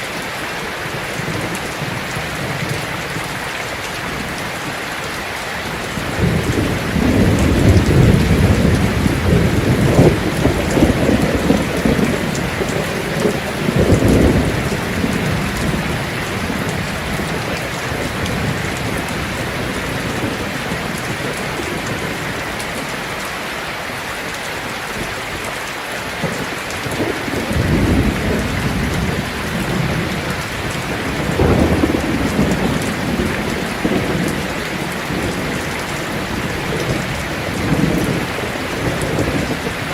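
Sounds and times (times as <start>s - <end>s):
heavy rain on a tin roof: 0.0s - 39.9s
thunder rumbling: 5.6s - 23.1s, 26.2s - 39.9s.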